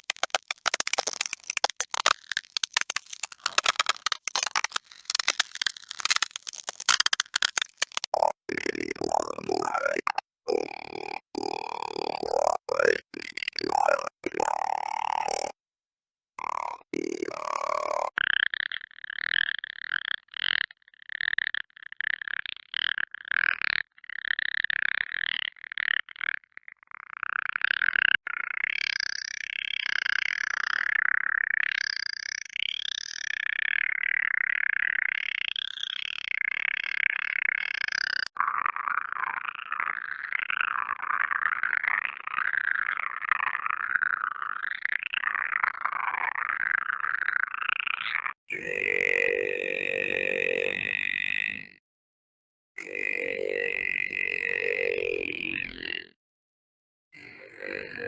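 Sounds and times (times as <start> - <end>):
processed alien creature voice: 0.0 - 15.6, 16.4 - 18.6, 38.3 - 51.8, 52.8 - 56.2, 57.2 - 58.0.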